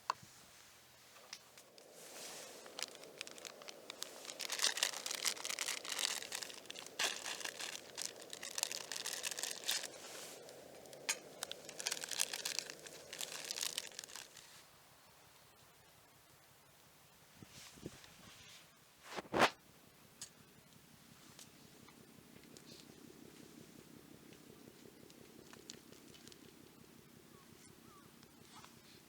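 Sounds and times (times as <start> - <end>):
crinkling and rustling: 0.1 - 14.6, 24.8 - 26.8.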